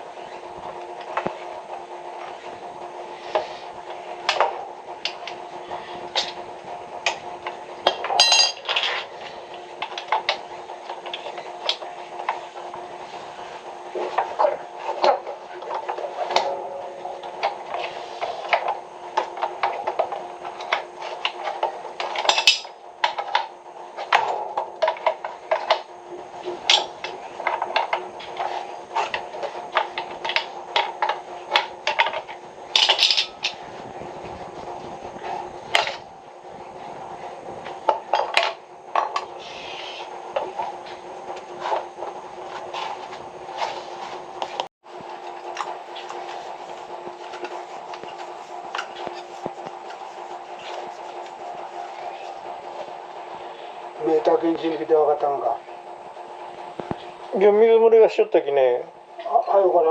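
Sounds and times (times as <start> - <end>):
steady hum: 0.0 - 59.9
tools clinking and knocking: 7.8 - 9.0, 22.0 - 23.4, 29.8 - 33.6.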